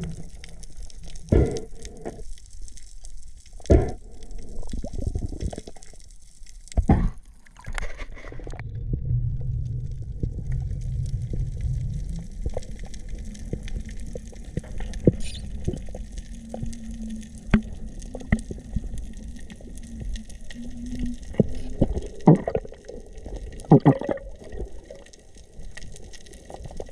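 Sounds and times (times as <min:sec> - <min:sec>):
low underwater rumble: 0:00.0 - 0:26.9.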